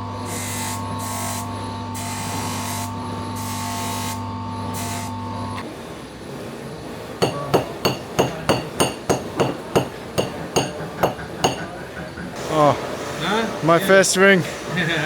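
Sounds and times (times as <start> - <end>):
small hammer tapping metal ring: 7.2 - 11.7.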